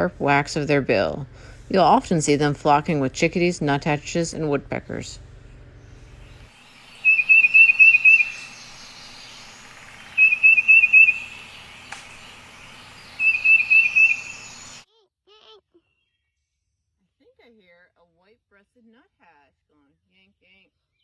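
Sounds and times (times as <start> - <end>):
bird singing whistled phrases: 6.6 - 14.8.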